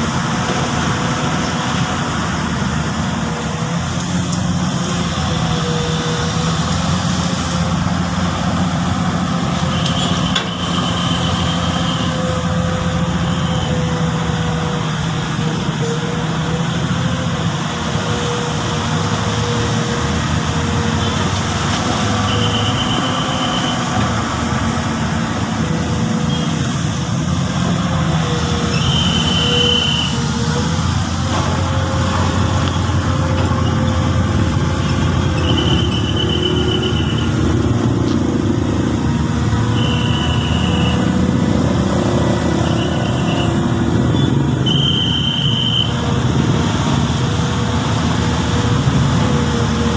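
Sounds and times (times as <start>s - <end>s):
excavator diesel engine running: 0.0s - 49.9s.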